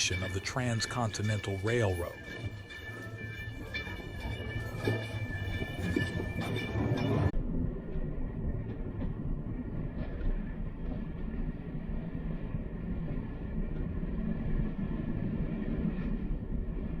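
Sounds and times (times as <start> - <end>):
train rumbling: 0.0 - 17.0.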